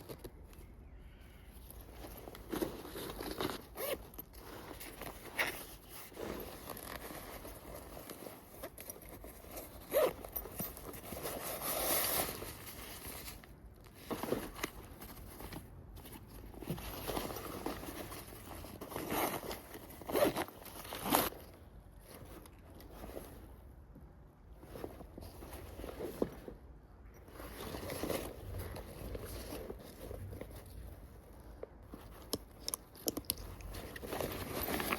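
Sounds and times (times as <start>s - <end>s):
fabric rustling: 1.3s - 34.9s
zipper pulled: 2.1s - 13.4s, 16.7s - 22.2s
backpack hardware clicks: 32.0s - 34.9s.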